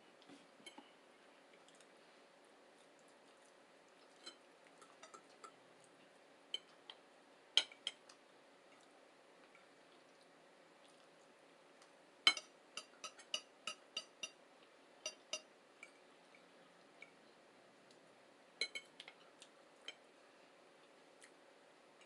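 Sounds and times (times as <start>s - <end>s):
cutlery clinking against plates: 4.2s - 5.6s, 12.3s - 14.4s, 15.0s - 16.0s, 18.6s - 19.0s.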